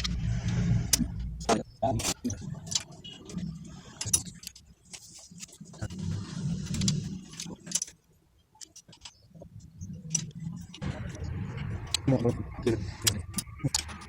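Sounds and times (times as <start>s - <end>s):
low background rumble: 0.0s - 7.7s.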